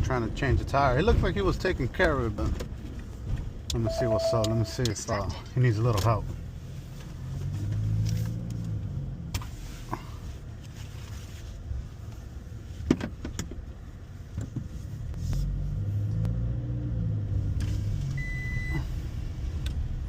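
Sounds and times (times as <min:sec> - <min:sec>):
short high beep: 0:03.8 - 0:04.9.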